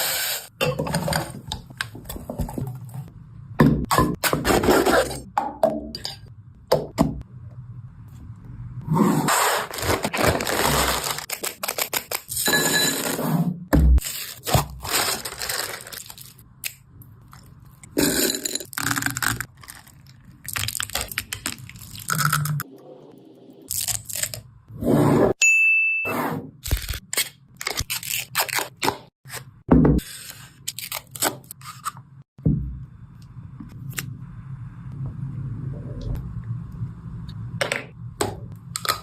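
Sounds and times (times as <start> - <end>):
food crunching and scraping: 9.3 - 12.4.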